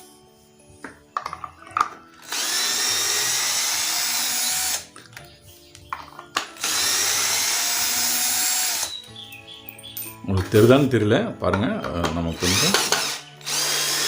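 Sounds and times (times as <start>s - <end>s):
cordless drill driving screws: 2.2s - 4.9s, 6.6s - 8.9s, 12.3s - 14.0s
handling noises: 9.6s - 12.4s.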